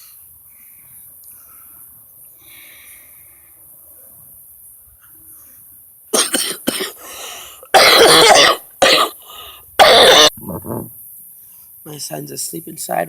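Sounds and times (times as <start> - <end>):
person coughing: 6.2 - 7.0, 7.7 - 9.2, 9.8 - 10.4.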